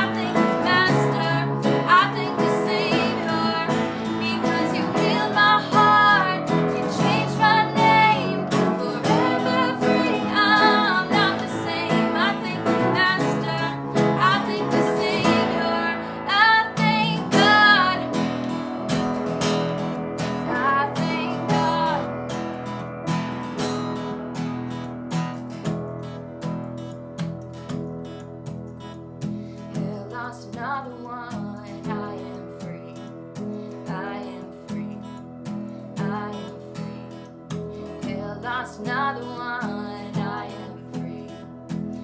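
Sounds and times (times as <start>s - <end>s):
voices singing: 0.0s - 18.5s, 20.5s - 22.2s
strummed acoustic guitar: 0.0s - 42.0s.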